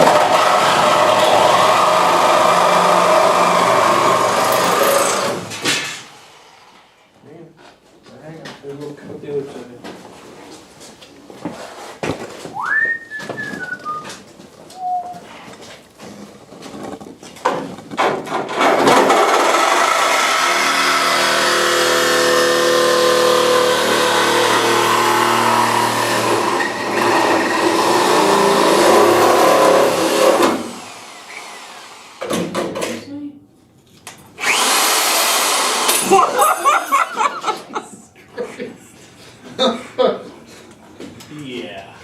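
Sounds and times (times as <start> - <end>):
power drill drilling sheet steel: 0.0 - 6.9, 18.6 - 32.5, 34.4 - 37.3.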